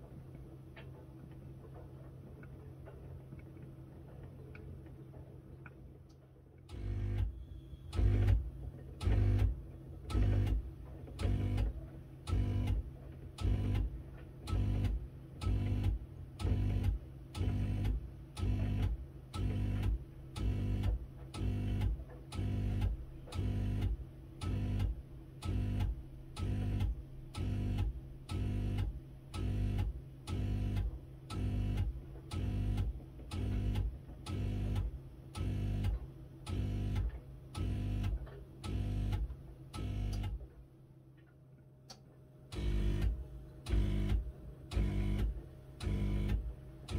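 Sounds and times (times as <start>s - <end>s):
washing machine pulsing hum: 0.0s - 46.9s.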